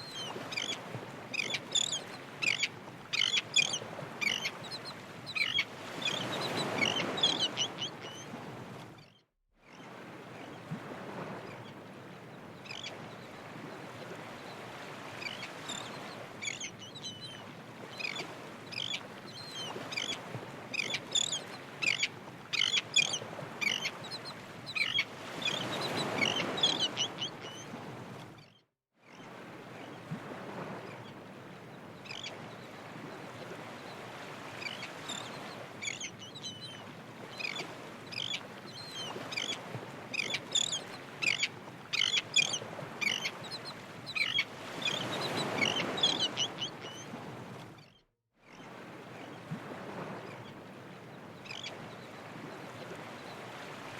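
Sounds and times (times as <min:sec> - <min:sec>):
birds chirping: 0:01.4 - 0:06.2.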